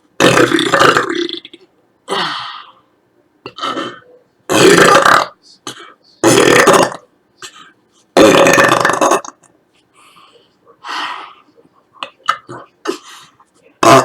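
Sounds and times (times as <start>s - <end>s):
woman belching: 0.2s - 1.6s, 3.5s - 5.3s, 6.2s - 7.0s, 8.2s - 9.4s, 13.8s - 14.0s.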